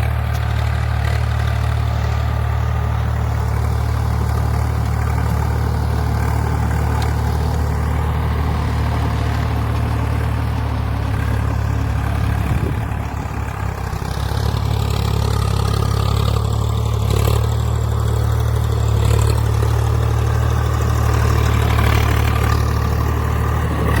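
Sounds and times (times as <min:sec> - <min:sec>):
tractor diesel engine running: 0:00.0 - 0:24.0.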